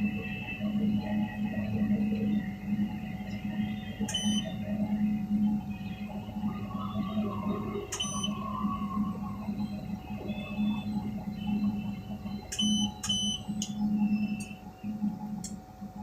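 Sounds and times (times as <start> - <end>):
crane machinery humming: 0.0 - 16.0
short high electronic beeps: 4.1 - 4.5.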